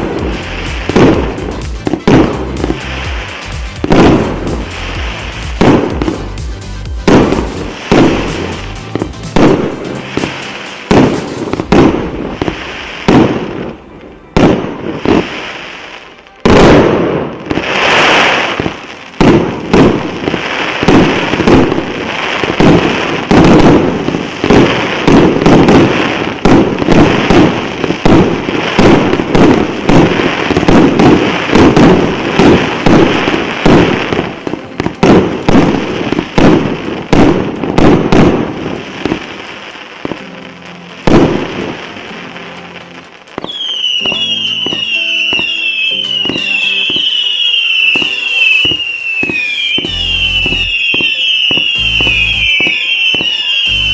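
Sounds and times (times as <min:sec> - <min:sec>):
loud firework bang: 0:00.0 - 0:02.8, 0:03.8 - 0:04.6, 0:05.5 - 0:06.2, 0:07.1 - 0:13.8, 0:14.4 - 0:15.3, 0:22.5 - 0:39.2, 0:47.9 - 0:53.9
firework barrage of shots and bursts: 0:00.0 - 0:53.9.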